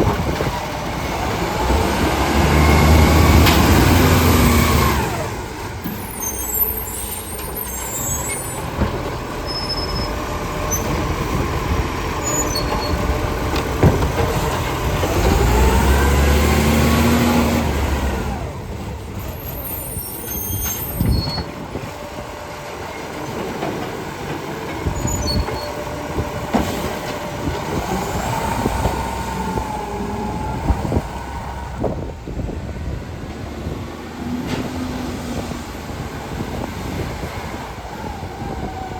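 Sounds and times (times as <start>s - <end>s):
garbage truck engine revving: 0.0s - 38.7s.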